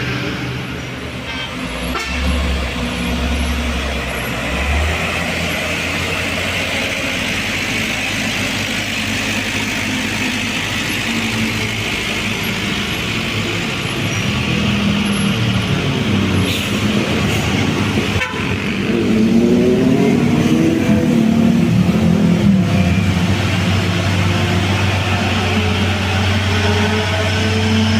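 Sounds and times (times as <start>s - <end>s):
heavy diesel truck engine: 0.0s - 27.9s
truck horn: 1.3s - 2.5s, 18.0s - 19.0s.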